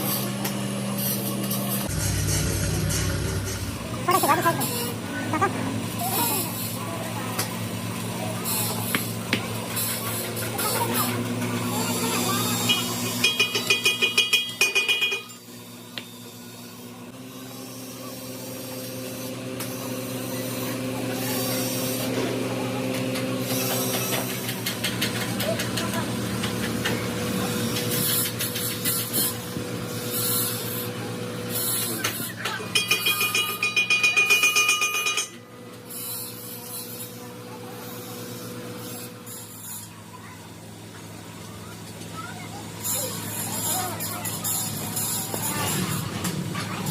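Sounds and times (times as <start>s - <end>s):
engine hum: 0.0s - 13.4s
steady motor hum: 0.0s - 46.9s
ringing metallic taps: 32.8s - 35.4s.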